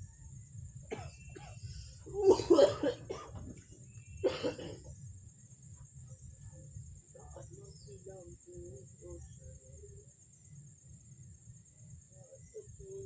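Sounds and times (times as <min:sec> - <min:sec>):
person coughing: 0:00.9 - 0:01.6, 0:02.2 - 0:03.4, 0:04.2 - 0:04.9.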